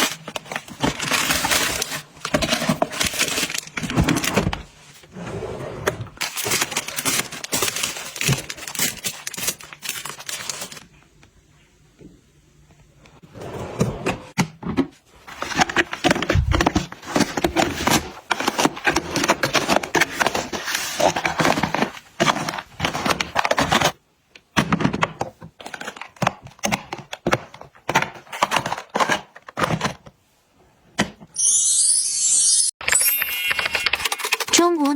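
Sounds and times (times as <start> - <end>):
packaging clicks taps and crinkling: 6.2 - 10.8, 15.5 - 30.0.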